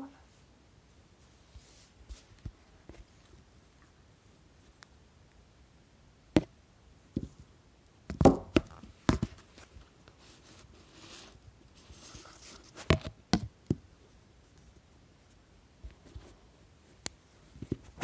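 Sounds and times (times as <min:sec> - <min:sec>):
soft rustle: 0:00.0 - 0:05.0, 0:08.8 - 0:13.1, 0:13.9 - 0:18.0.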